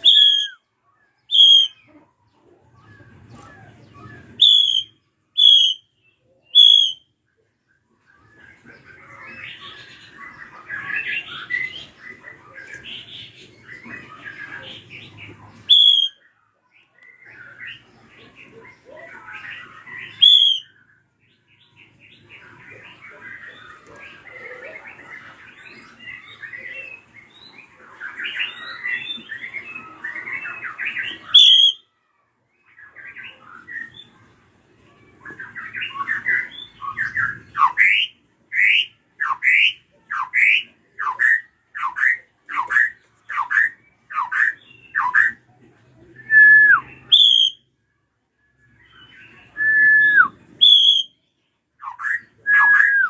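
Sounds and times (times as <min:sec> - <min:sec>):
bird whistled notes: 0:00.0 - 0:00.6, 0:01.3 - 0:01.8, 0:04.0 - 0:05.9, 0:06.5 - 0:07.0, 0:15.7 - 0:16.2, 0:20.2 - 0:20.7, 0:46.2 - 0:47.6, 0:49.5 - 0:51.2.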